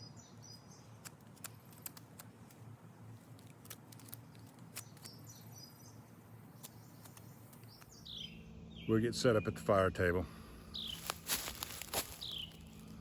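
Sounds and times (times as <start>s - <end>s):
small bird chirping: 0.0s - 2.0s, 3.9s - 9.6s, 10.7s - 12.9s
light clicks and ticks: 1.0s - 2.6s.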